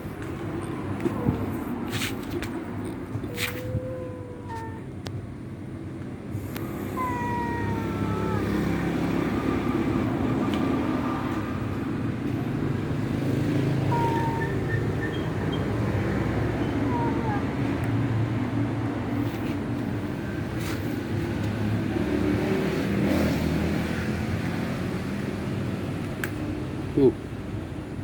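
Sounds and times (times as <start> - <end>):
falling whistle-like calls: 14.0 - 15.8.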